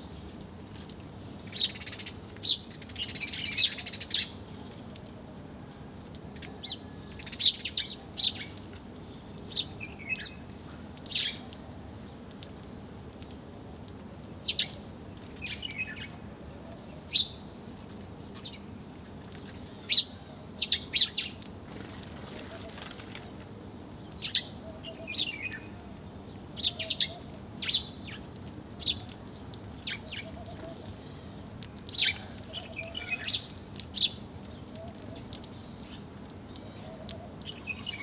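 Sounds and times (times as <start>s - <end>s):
small birds chirping: 0.0s - 5.2s, 6.0s - 12.6s, 14.3s - 38.0s
birds twittering: 24.1s - 29.1s, 31.9s - 38.0s.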